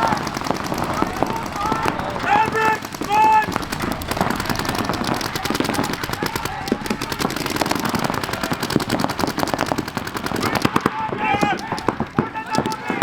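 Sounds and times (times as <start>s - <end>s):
paintball markers firing: 0.0s - 13.0s.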